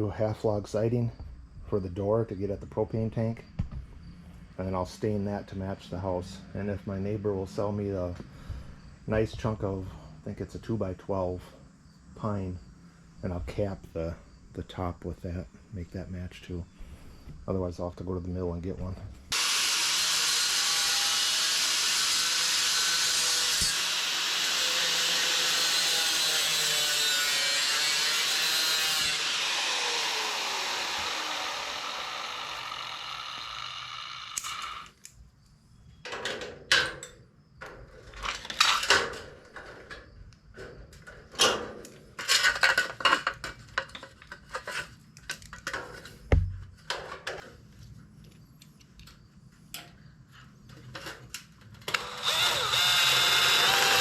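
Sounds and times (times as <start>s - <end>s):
power saw running: 19.3s - 35.0s, 51.9s - 54.0s
hand tools scraping wood: 21.9s - 34.1s.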